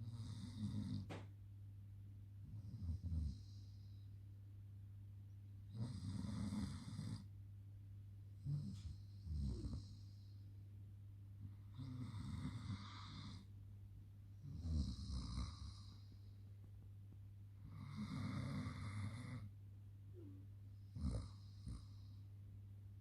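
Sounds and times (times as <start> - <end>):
dog snoring: 0.0 - 1.2, 2.4 - 4.0, 5.7 - 7.3, 8.4 - 10.2, 11.6 - 13.5, 14.4 - 16.2, 17.6 - 19.5, 20.2 - 22.1
steady low hum: 0.0 - 23.0.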